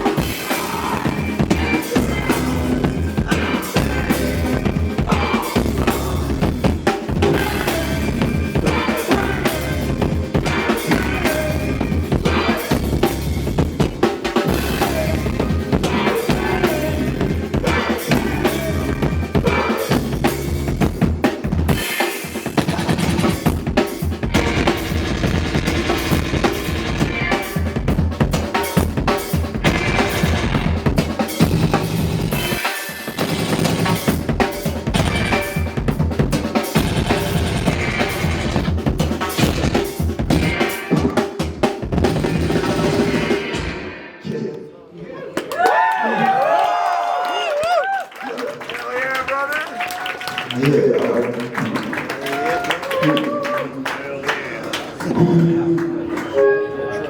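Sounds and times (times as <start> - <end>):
rock band playing: 0.0 - 44.2
kick and snare drum hits: 36.8 - 38.7.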